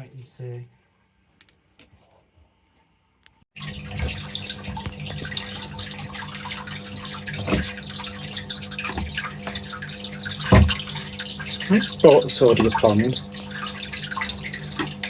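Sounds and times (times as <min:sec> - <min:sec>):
water trickling and dripping: 0:03.6 - 0:15.0.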